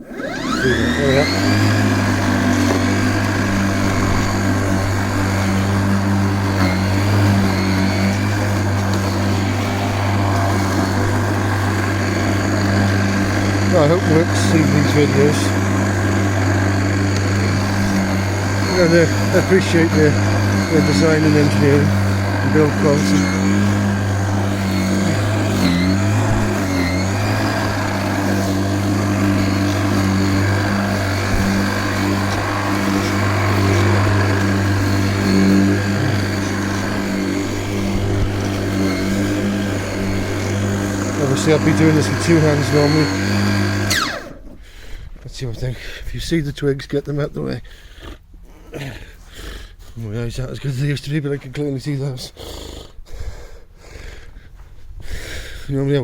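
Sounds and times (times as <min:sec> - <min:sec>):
electric lawnmower humming: 0:00.0 - 0:44.6.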